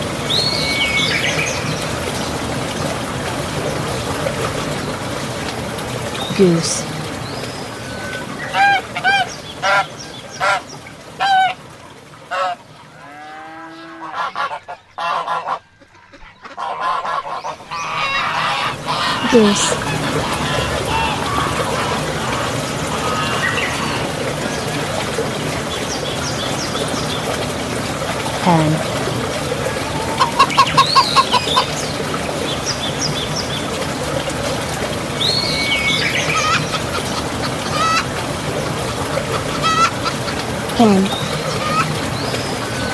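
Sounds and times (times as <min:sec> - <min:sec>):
water trickling: 0:00.0 - 0:42.9
goose honking: 0:12.3 - 0:24.1, 0:39.3 - 0:40.4
hen clucking: 0:13.5 - 0:24.0, 0:36.3 - 0:38.3, 0:39.0 - 0:42.1.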